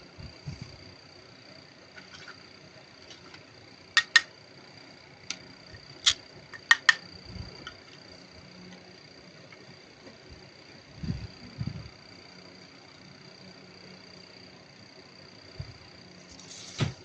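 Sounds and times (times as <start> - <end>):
plastic toy pieces clicking: 4.0 - 4.3, 6.0 - 7.0.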